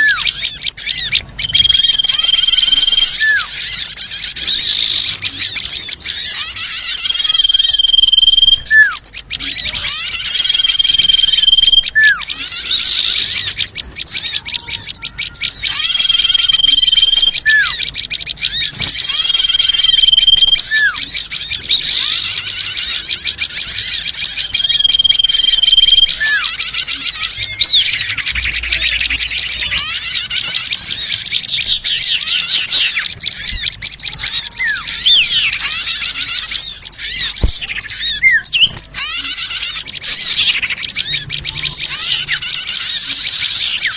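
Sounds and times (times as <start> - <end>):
small birds chattering: 0.0 - 43.9.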